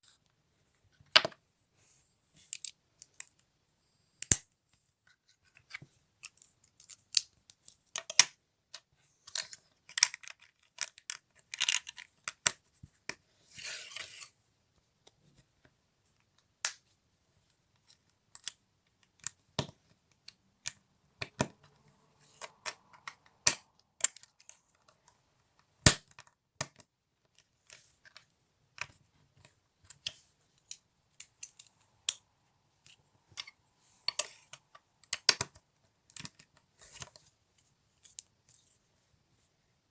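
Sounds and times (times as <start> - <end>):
plastic toy bricks clicking: 9.3 - 12.6, 33.3 - 37.0.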